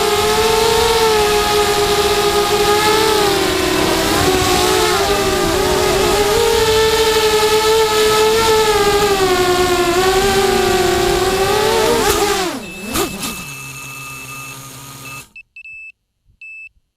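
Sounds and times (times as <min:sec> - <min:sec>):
drone motors whining: 0:00.0 - 0:15.3
short electronic beep: 0:12.2 - 0:16.7.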